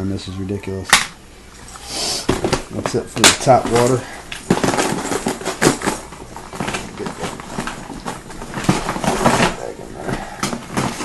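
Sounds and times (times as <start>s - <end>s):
rustling: 1.5s - 11.0s
hard plastic clattering: 2.2s - 11.0s.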